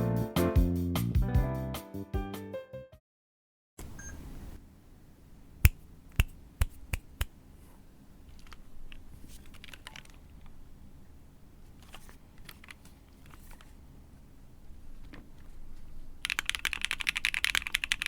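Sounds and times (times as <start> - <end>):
mechanical keyboard typing: 8.3 - 10.5, 12.4 - 13.4, 16.2 - 18.0.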